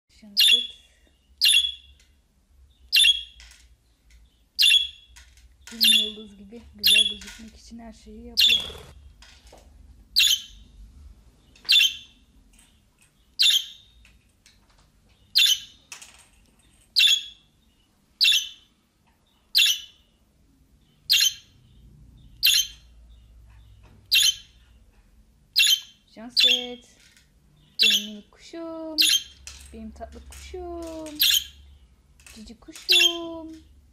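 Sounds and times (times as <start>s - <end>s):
budgerigar squawking: 8.4s - 9.0s.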